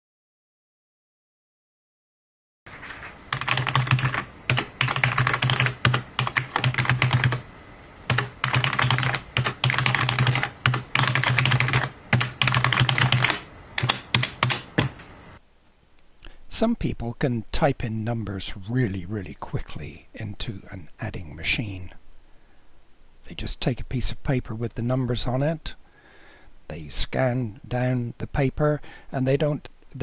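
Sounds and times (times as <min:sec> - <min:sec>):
keys typed rapidly: 0:03.3 - 0:07.5, 0:08.1 - 0:14.8
low hum: 0:17.4 - 0:23.2.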